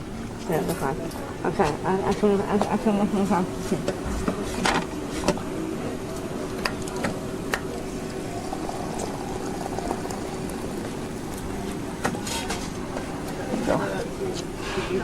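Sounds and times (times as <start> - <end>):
water running into a container: 7.7 - 12.2.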